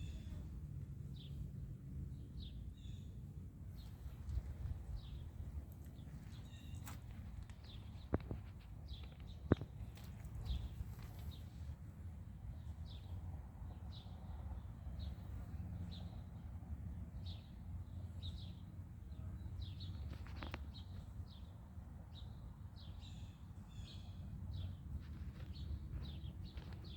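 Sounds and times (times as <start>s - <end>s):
steady low rumble: 0.2s - 17.1s
bird chirping: 3.8s - 11.6s.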